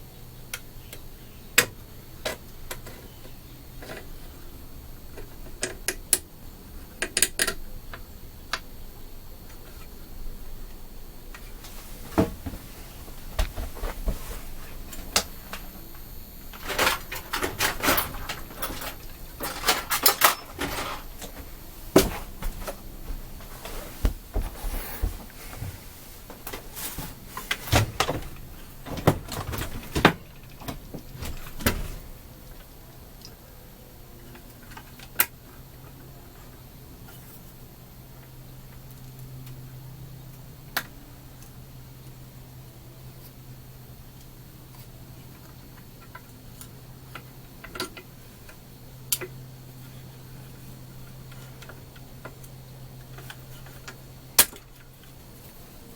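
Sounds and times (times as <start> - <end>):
metal parts rattling on workbench: 16.5 - 21.4.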